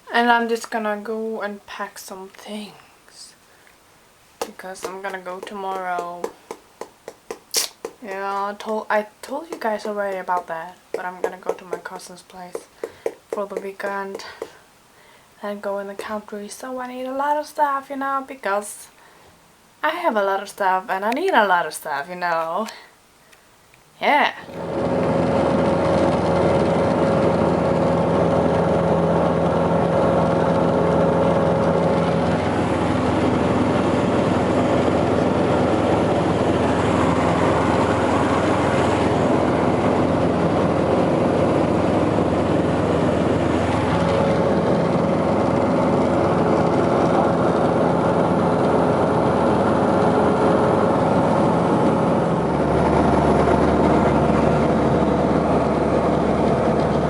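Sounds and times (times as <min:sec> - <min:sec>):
small airplane engine and propeller: 0:24.6 - 0:57.0.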